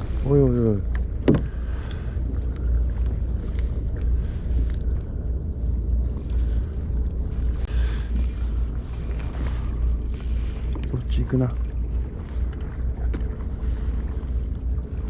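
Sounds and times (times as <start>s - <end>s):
boat engine rumble: 0.0s - 15.0s
faint small knocks: 0.9s - 1.5s.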